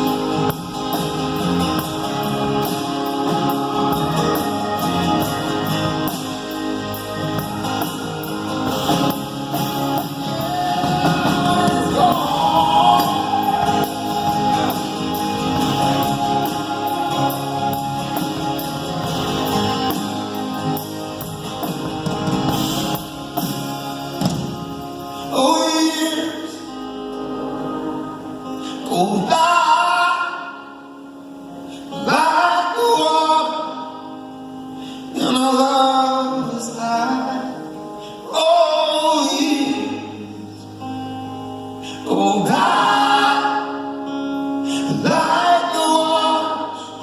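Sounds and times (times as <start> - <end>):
live rock band: 0.0 - 47.0.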